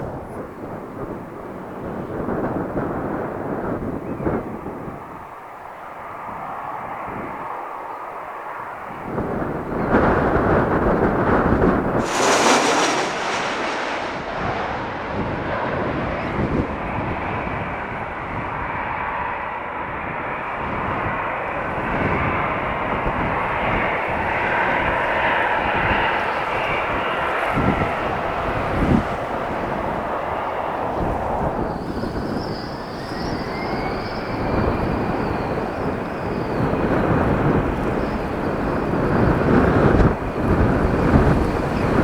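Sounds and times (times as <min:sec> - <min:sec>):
airliner engines: 0:00.0 - 0:42.0
brief high hiss: 0:12.0 - 0:15.2.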